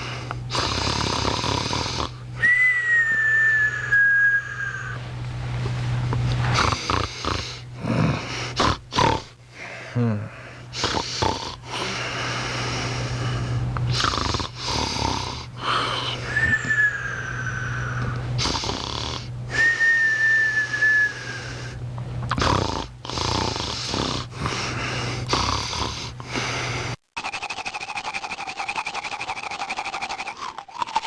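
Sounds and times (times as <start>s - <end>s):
person snoring: 0.0s - 2.5s, 6.4s - 19.8s, 20.6s - 31.0s
whistling breath: 2.4s - 5.0s, 15.6s - 18.2s, 19.5s - 21.8s.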